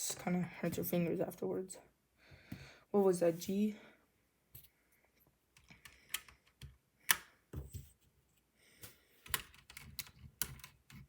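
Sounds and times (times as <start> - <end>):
keycaps clicking and snapping: 5.6 - 7.2, 9.2 - 11.0.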